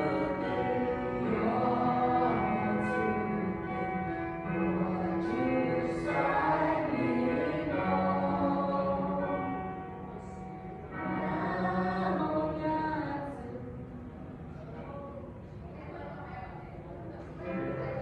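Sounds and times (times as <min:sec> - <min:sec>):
choir singing sustained notes: 0:00.0 - 0:13.7.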